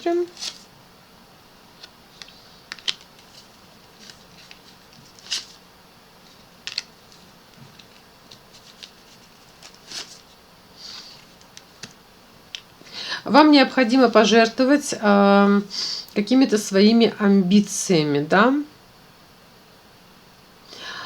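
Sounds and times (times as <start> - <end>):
cards clicking and rustling: 0.3 - 0.7, 1.8 - 5.6, 6.3 - 10.3, 11.0 - 12.0.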